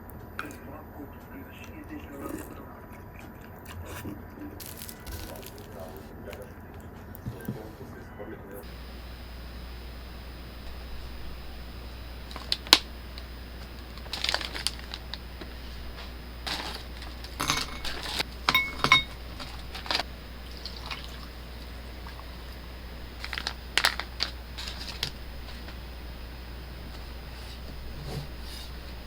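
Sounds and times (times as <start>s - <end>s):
low steady hum: 8.5s - 29.0s
utensils clicking and knocking: 12.3s - 20.1s.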